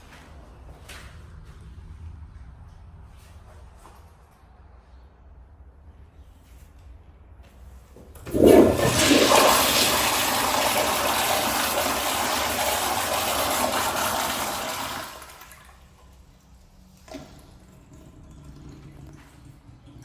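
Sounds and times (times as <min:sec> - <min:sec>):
toilet flushing: 0:08.1 - 0:16.2, 0:16.9 - 0:20.0.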